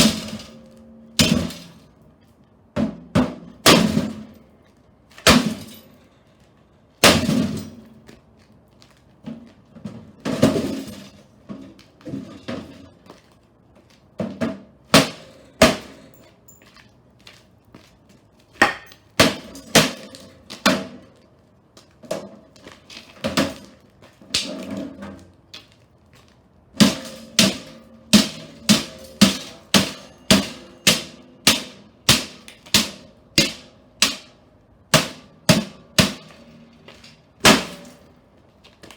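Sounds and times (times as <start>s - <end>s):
blows ringing on sheet metal: 26.9s - 31.8s.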